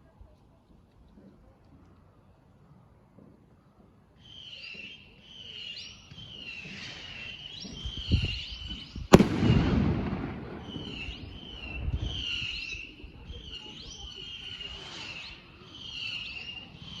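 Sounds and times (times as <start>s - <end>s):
firework bang: 9.1s - 12.7s.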